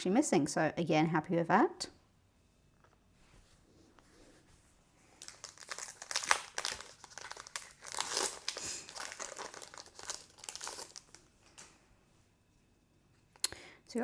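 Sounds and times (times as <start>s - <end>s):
foil wrapper crinkling and tearing: 5.2s - 11.7s.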